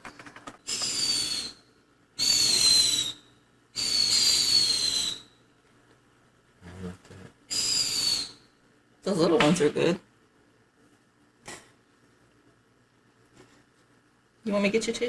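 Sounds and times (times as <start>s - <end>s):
whistling fireworks: 0.7s - 1.6s, 2.2s - 3.2s, 3.8s - 5.3s.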